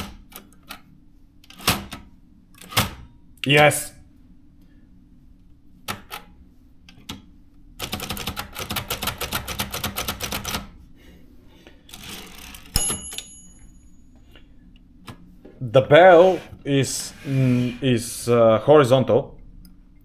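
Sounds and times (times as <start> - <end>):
typewriter keys striking: 7.8 - 10.7
typewriter bell ding: 12.7 - 14.1.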